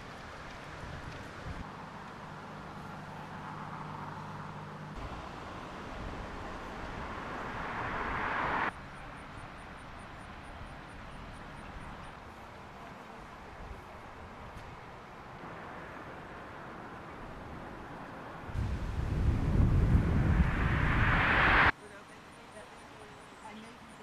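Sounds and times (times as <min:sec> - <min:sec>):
vehicle passing: 0:01.7 - 0:09.5, 0:15.4 - 0:21.7.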